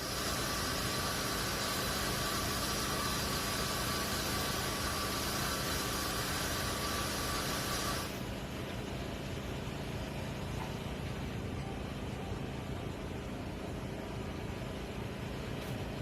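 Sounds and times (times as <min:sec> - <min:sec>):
hiss: 0:00.0 - 0:08.3
faint tone: 0:11.5 - 0:13.2.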